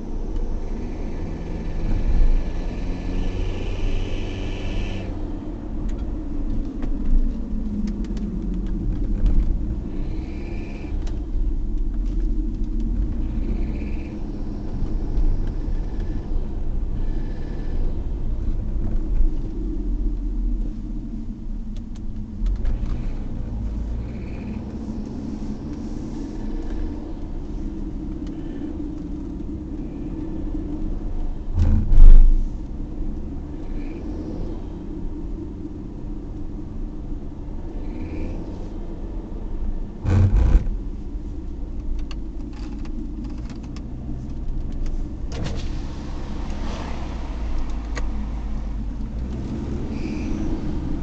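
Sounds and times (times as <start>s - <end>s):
road rumble inside car: 0.0s - 51.0s
light ticks and rattles: 41.7s - 45.7s.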